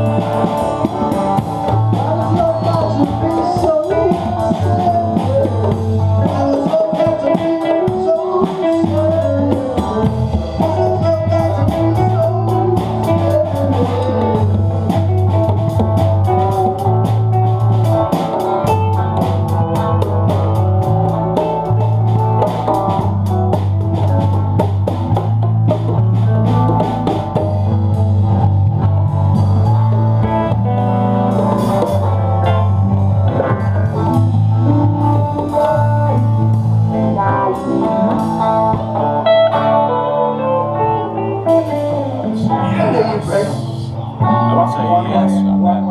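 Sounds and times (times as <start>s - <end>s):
rock blues band playing: 0.0s - 45.9s.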